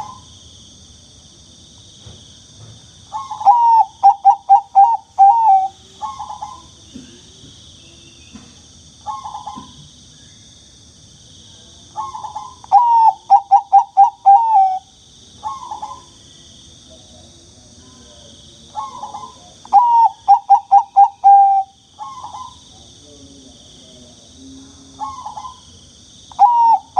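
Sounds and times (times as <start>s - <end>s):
dove cooing: 0.0s - 0.2s, 3.1s - 7.1s, 9.0s - 9.8s, 12.0s - 16.1s, 18.7s - 22.6s, 24.9s - 25.7s, 26.3s - 26.9s.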